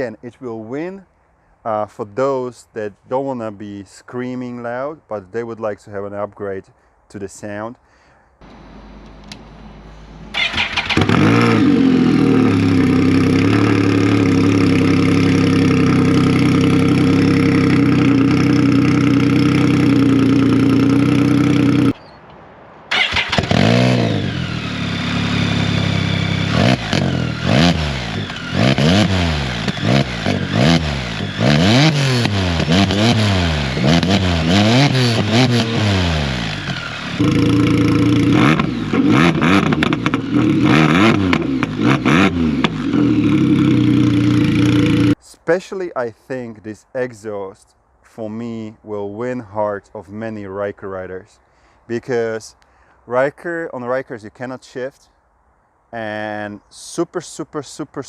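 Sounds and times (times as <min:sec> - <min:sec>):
motorcycle engine revving: 0:08.4 - 0:22.1, 0:22.9 - 0:45.2.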